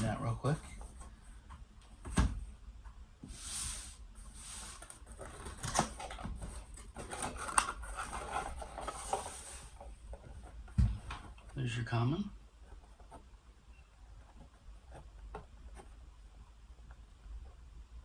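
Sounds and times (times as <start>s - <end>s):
packaging rustling: 4.6s - 10.5s.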